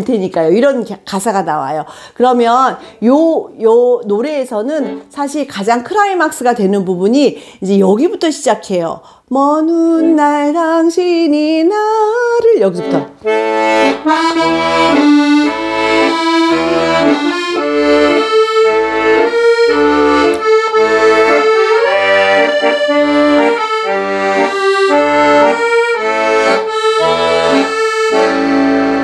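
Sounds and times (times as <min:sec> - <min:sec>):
accordion playing: 0:04.4 - 0:05.5, 0:09.8 - 0:10.5, 0:12.4 - 0:29.0.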